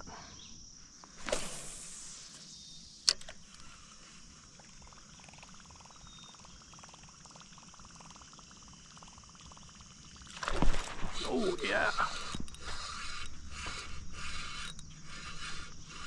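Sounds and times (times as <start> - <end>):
high-pitched insect chorus: 0.0 - 16.0
sharp click: 3.0 - 3.4.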